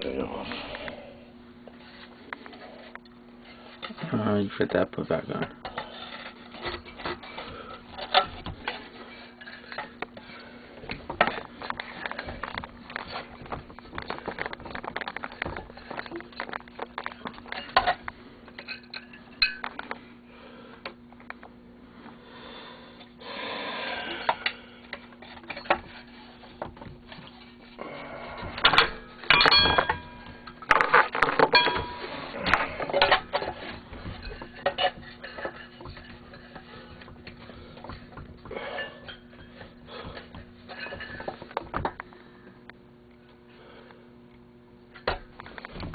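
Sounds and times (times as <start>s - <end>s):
faint steady hum: 0.0s - 45.9s
metal parts and tools clattering: 5.6s - 10.3s, 11.0s - 20.0s, 28.4s - 42.0s
metal tools clinking: 28.6s - 37.0s.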